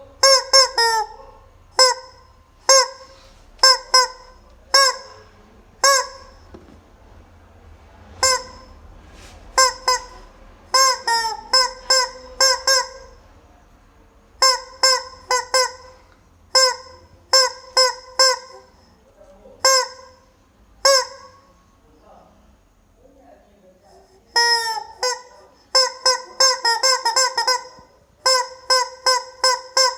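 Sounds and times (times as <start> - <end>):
rubber chicken toy squawking: 0.0 - 6.6, 8.2 - 8.7, 9.6 - 13.2, 14.4 - 18.8, 19.6 - 20.2, 20.8 - 21.4, 24.3 - 29.9.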